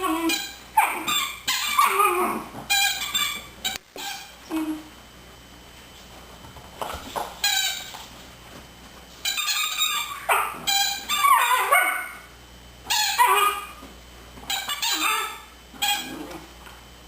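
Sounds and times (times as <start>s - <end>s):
squeaky toy squeaking: 0.3s - 2.0s, 2.7s - 4.3s, 9.2s - 11.7s, 12.9s - 13.7s, 14.5s - 16.1s
puppy yipping: 9.3s - 12.2s, 12.9s - 13.7s, 14.6s - 16.2s.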